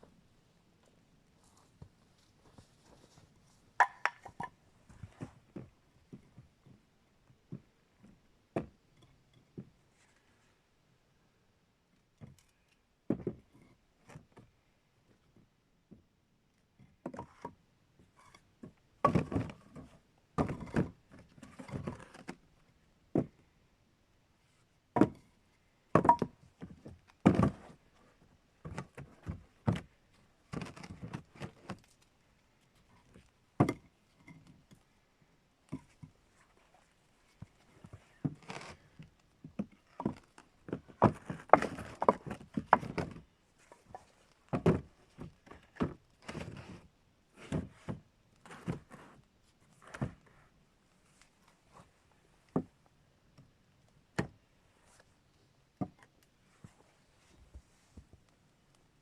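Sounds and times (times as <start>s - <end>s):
wooden knocks and thuds: 25.0s - 25.2s.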